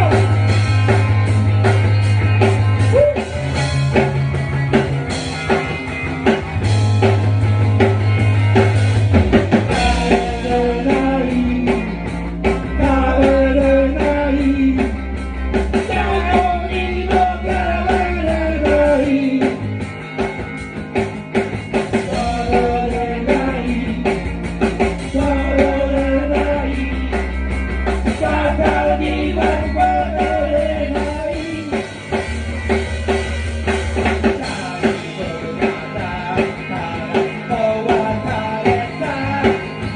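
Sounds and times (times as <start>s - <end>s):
rock band playing live: 0.0s - 39.9s
person singing: 9.7s - 12.0s, 12.6s - 15.0s, 15.8s - 19.7s, 22.0s - 24.3s, 25.0s - 27.2s, 28.1s - 31.9s, 34.2s - 39.9s.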